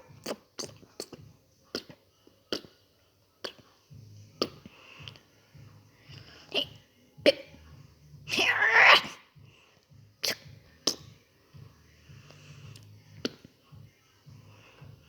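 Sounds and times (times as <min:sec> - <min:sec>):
faint low hum: 0:00.0 - 0:08.6.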